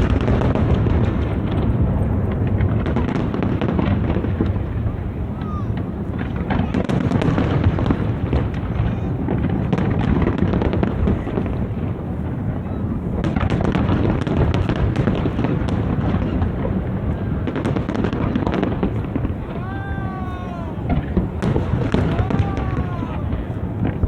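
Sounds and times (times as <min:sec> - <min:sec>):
fireworks bangs and crackles: 0:00.0 - 0:24.0
person crying out: 0:05.4 - 0:05.8, 0:19.5 - 0:21.1, 0:21.9 - 0:23.5.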